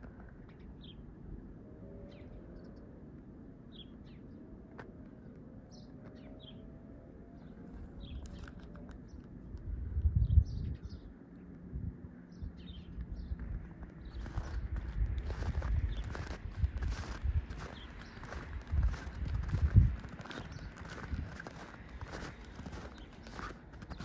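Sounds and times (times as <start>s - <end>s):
small birds chirping: 7.4s - 9.4s, 12.2s - 24.0s.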